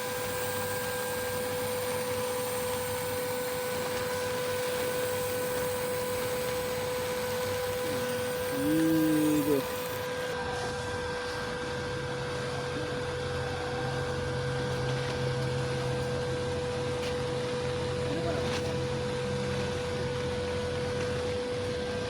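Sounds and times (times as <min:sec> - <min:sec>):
welding arc hum and hiss: 0:00.0 - 0:10.6.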